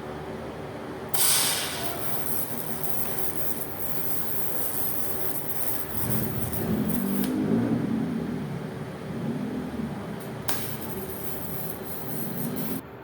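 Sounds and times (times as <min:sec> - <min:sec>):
welding arc hissing: 0:01.1 - 0:07.4, 0:10.2 - 0:13.0.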